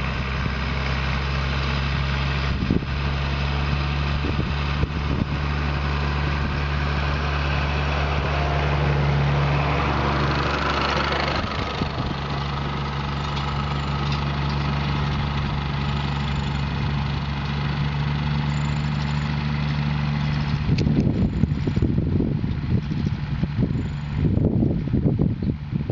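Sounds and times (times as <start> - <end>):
diesel engine running: 0.0 - 25.9
wind buffeting microphone: 2.3 - 15.9, 20.3 - 25.9.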